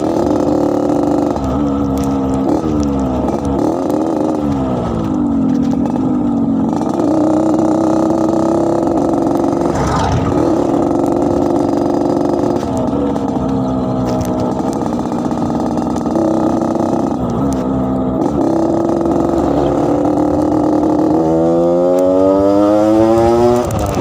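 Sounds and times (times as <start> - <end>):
two-stroke motorcycle engine revving: 0.0 - 24.0.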